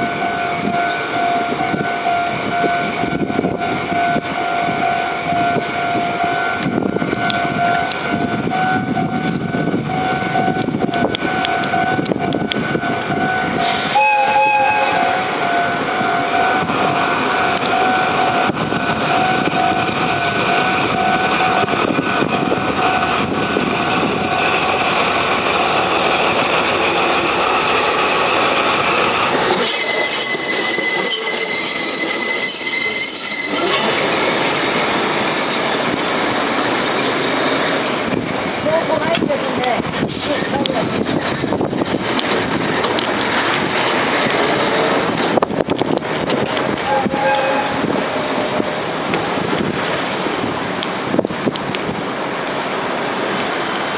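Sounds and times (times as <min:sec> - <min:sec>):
level crossing alarm ringing: 0:00.0 - 0:34.2
diesel locomotives rumbling: 0:00.0 - 0:53.9
locomotive horn blast: 0:11.3 - 0:16.7, 0:46.8 - 0:48.0
high wheel squeal: 0:11.3 - 0:25.0, 0:25.6 - 0:34.5.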